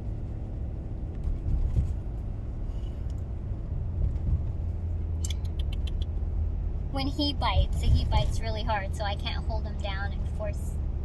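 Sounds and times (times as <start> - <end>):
car road rumble: 0.0 - 11.0
short clicks: 5.2 - 6.2.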